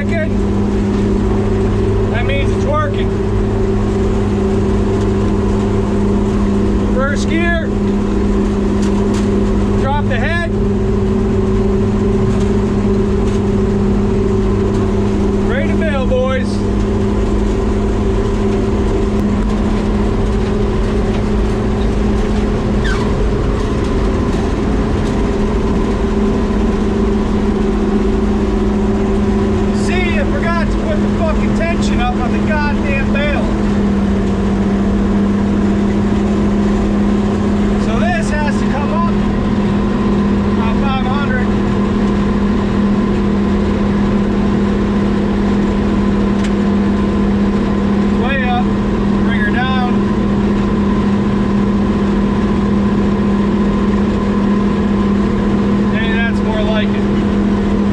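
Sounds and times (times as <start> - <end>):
vehicle engine and road noise: 0.0 - 57.9
short falling squeak: 22.8 - 23.2.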